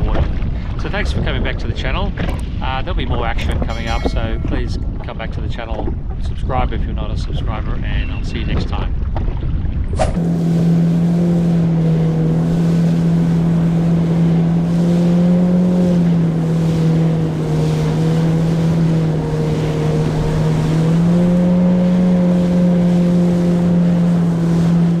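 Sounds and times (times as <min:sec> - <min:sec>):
jet ski engine running: 0:00.0 - 0:06.9, 0:07.5 - 0:25.0
wind rushing: 0:02.4 - 0:06.2
water rushing: 0:03.4 - 0:05.2, 0:09.9 - 0:25.0.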